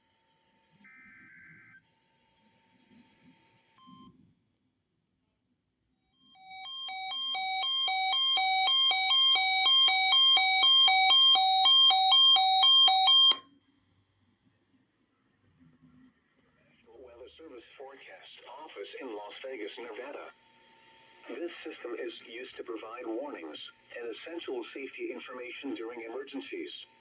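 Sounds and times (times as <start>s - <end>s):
alternating alarm beep: 6.3s - 13.4s.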